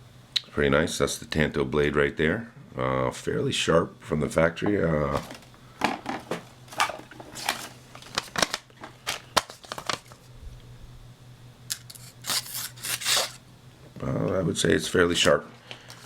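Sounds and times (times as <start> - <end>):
knife blade scratchy slicing: 11.7 - 13.4.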